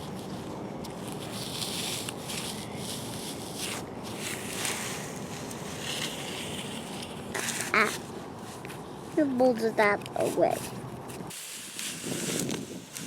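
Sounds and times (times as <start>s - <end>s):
wind on microphone: 11.2s - 13.0s.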